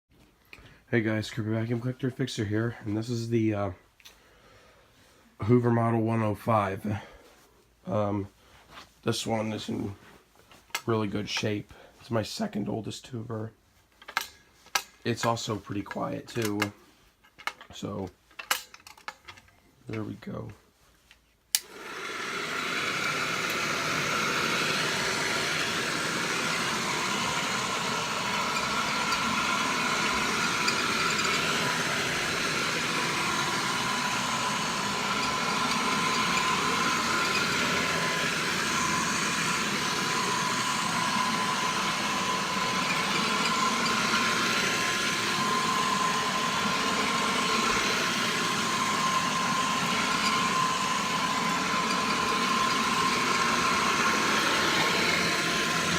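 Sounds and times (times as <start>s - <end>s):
vacuum cleaner running: 21.6s - 55.9s.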